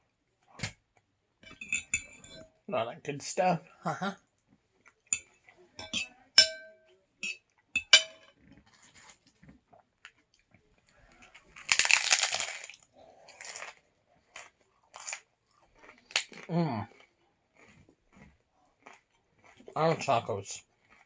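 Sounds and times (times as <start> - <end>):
utensil clinking dishware: 1.5 - 2.4, 5.2 - 8.3
taco shell crunching: 11.0 - 19.7.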